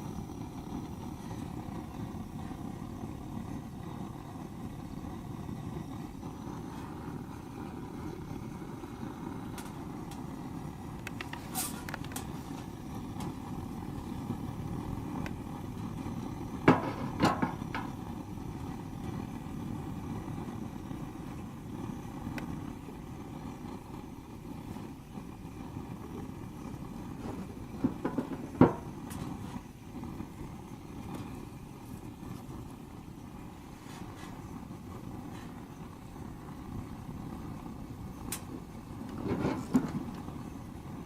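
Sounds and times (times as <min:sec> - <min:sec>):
wood fire crackling and popping: 0:00.0 - 0:41.0.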